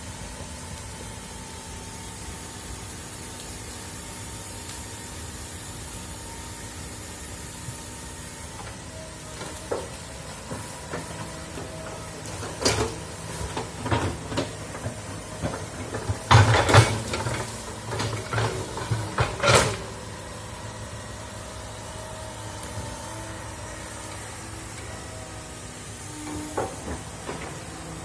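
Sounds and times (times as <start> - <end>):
excavator engine running: 0.0 - 28.0
metallic clanks and knocks: 12.4 - 19.9.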